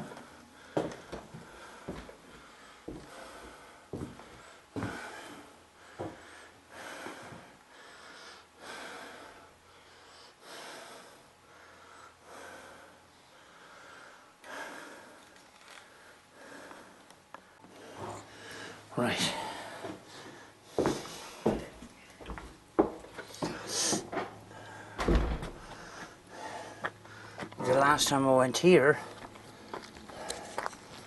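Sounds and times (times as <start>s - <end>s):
person breathing heavily: 0.0s - 22.3s, 23.2s - 27.9s, 28.9s - 31.0s.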